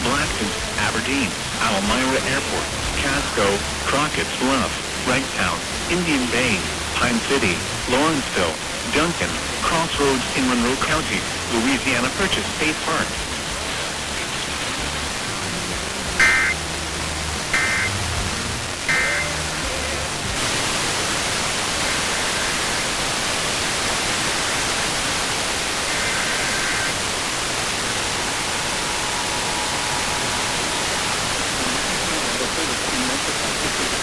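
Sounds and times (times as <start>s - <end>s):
radio static hissing: 0.0s - 34.0s
screeching data bursts: 16.2s - 16.6s, 17.5s - 18.1s, 18.9s - 19.6s, 25.8s - 32.1s
two-tone alert signal: 16.2s - 16.6s, 17.6s - 18.0s, 18.9s - 19.4s.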